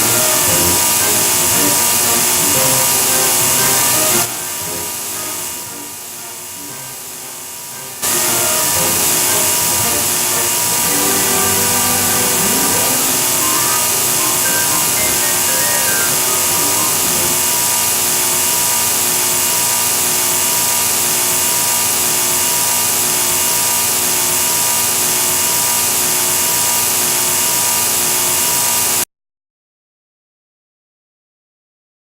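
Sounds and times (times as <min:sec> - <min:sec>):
faint melodic notes: 0:00.0 - 0:17.8
harsh distorted hiss: 0:00.0 - 0:29.0.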